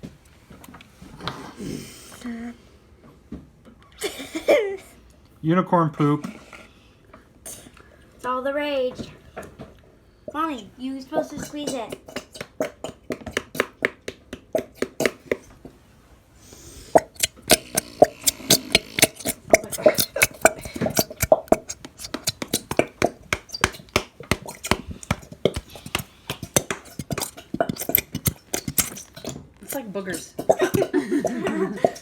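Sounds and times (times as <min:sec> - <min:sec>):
squeeze bottle sputtering glue: 0:16.7 - 0:32.0.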